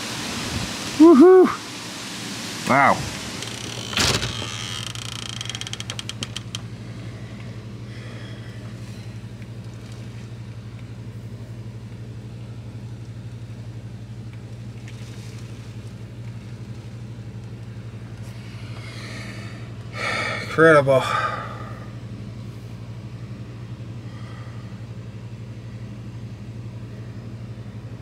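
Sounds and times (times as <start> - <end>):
wind and rain rushing: 0.0 - 6.6
steady low hum: 0.0 - 28.0.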